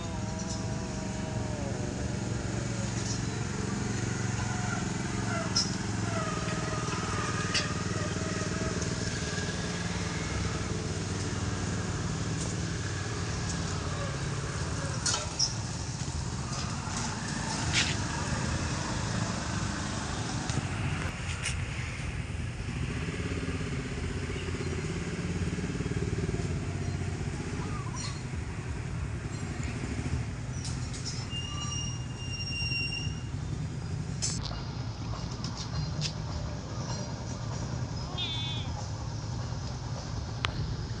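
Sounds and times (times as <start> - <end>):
engine running: 0.0 - 41.0.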